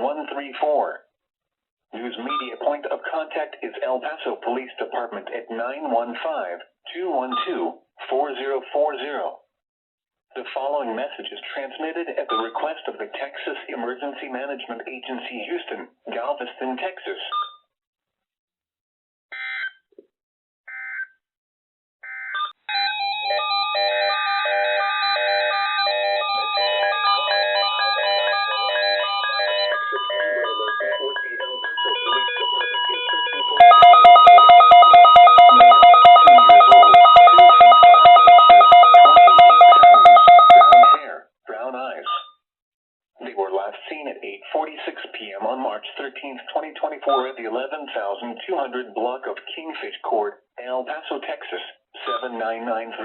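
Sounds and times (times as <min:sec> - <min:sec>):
rapidly pulsing alarm beep: 0:23.7 - 0:41.0
stepped electronic alert tones: 0:24.3 - 0:41.0
digital data tone bursts: 0:26.3 - 0:41.0.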